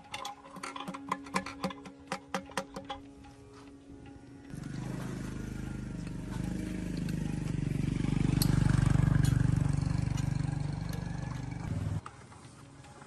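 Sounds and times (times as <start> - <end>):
small diesel engine running: 4.5 - 12.0.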